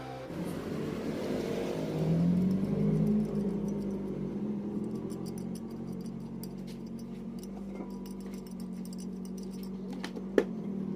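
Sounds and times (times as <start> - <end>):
motorcycle engine idling: 2.3 - 10.6.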